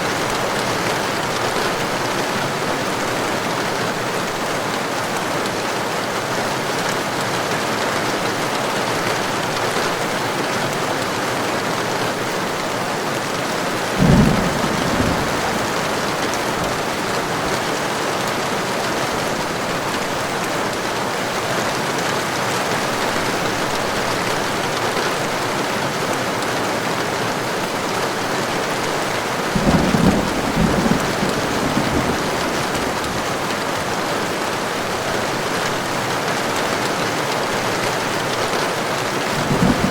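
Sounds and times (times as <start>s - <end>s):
heavy rain pouring: 0.0s - 39.9s
thunder rumbling: 13.8s - 17.7s, 29.4s - 33.6s, 39.4s - 39.9s.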